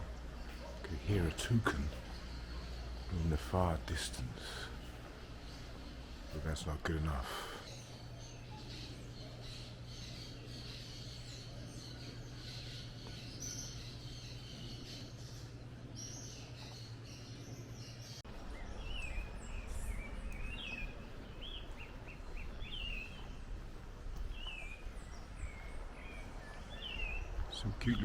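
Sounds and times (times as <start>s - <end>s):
birds chirping: 0.0s - 28.0s
steady low hum: 0.0s - 28.0s.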